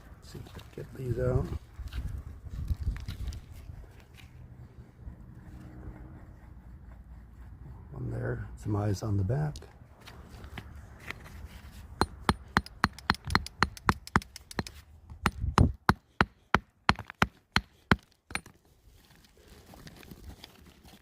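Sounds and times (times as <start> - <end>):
hand tool tapping rock: 12.0 - 18.5.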